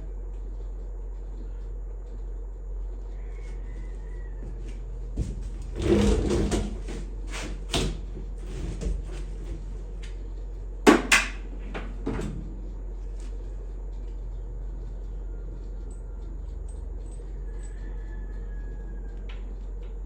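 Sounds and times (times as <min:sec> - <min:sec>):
scraping rattle: 0:05.2 - 0:10.3.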